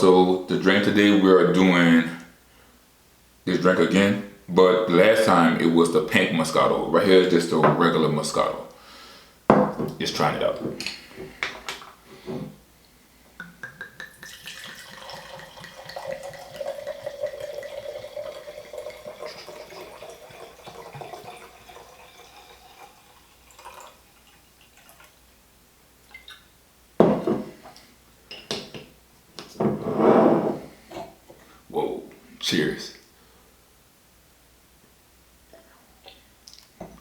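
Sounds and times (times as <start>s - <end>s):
wine pouring into a glass: 13.4s - 25.2s.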